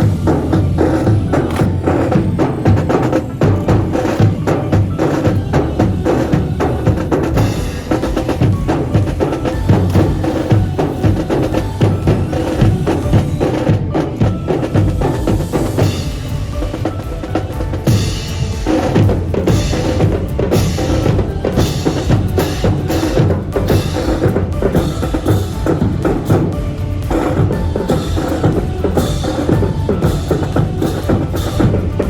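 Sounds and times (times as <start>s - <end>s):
drums beating: 0.0s - 32.0s.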